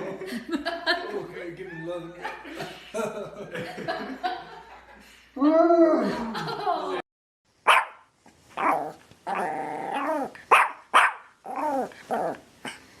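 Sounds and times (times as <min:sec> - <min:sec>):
dog barking: 0:07.6 - 0:08.9, 0:10.0 - 0:11.4
dog grumbling growls: 0:08.6 - 0:10.4, 0:11.5 - 0:12.8.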